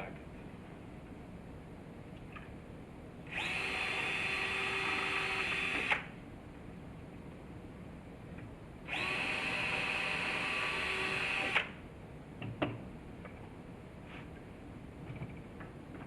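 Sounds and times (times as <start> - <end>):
power drill drilling into wood: 3.3 - 6.1, 8.9 - 11.7.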